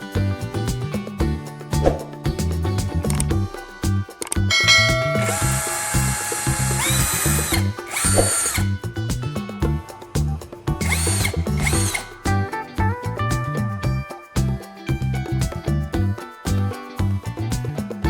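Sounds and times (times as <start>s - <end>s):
background music with beat: 0.0s - 18.0s
electric motor whining: 4.7s - 8.6s.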